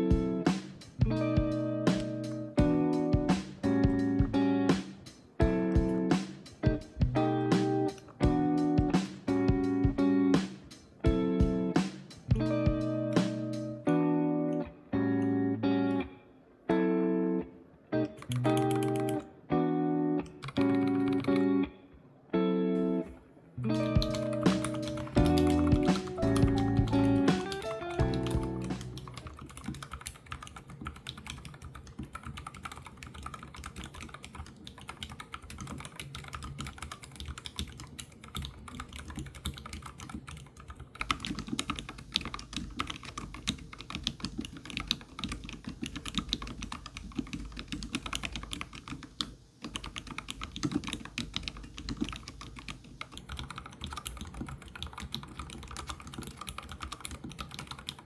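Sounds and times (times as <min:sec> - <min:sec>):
fast typing on mechanical keyboard: 0:18.2 - 0:19.2, 0:20.4 - 0:21.5, 0:24.0 - 0:58.0.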